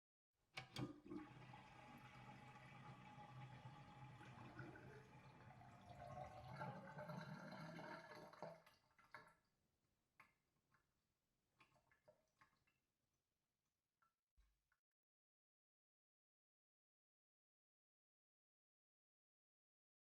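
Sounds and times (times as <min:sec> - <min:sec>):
water running down drain: 0:00.6 - 0:09.4
water drips: 0:00.7 - 0:09.5.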